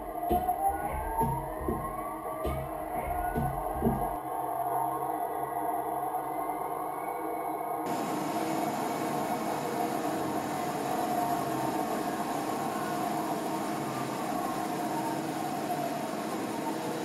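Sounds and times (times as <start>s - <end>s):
lathe mechanical hum and hiss: 0.0s - 4.2s, 7.9s - 17.0s
music: 0.0s - 7.8s.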